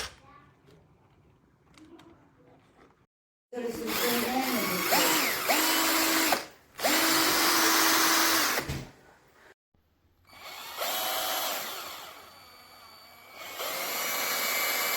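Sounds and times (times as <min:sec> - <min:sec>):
cordless drill motor whining: 0:03.7 - 0:08.7, 0:10.3 - 0:14.9.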